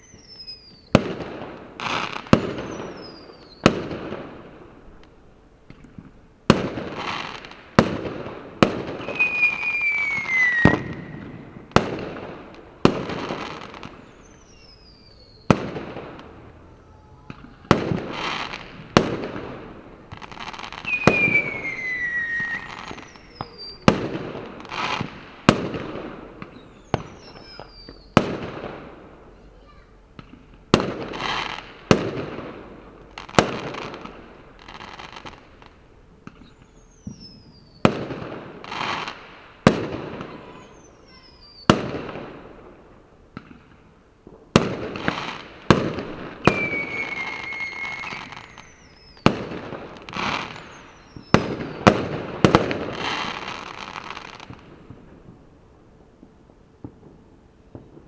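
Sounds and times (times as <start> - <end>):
falling whistle of fireworks: 0.0 - 4.2, 8.6 - 28.7, 36.2 - 42.3, 44.5 - 54.6
fireworks bangs: 0.0 - 58.0.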